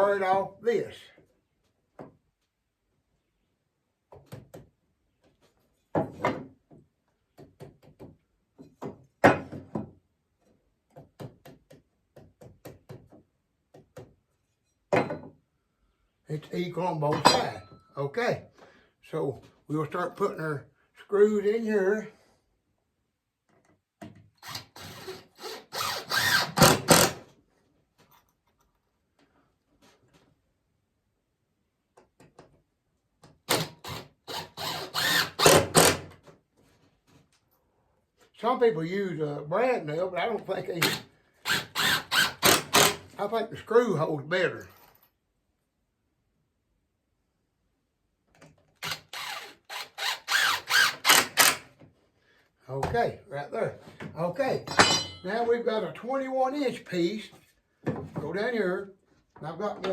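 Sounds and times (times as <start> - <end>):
power drill driving screw into wood: 24.4 - 27.3, 33.5 - 36.2, 40.8 - 43.1, 48.8 - 51.8.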